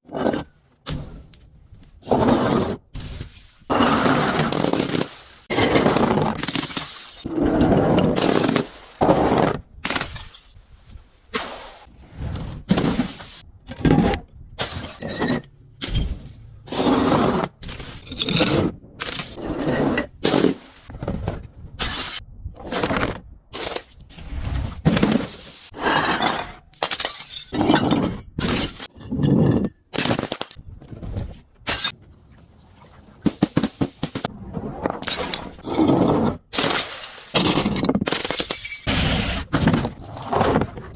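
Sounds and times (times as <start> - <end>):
glass bottles shattering: 6.4 - 7.3, 8.2 - 9.2, 9.9 - 10.6, 14.6 - 16.6, 26.3 - 28.9, 36.5 - 38.9.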